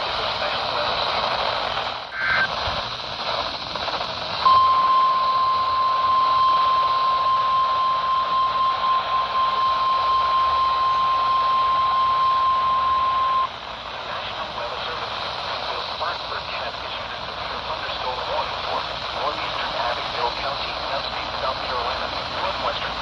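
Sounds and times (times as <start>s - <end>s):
radio hiss: 0.0s - 23.0s
steady alarm tone: 4.4s - 13.5s.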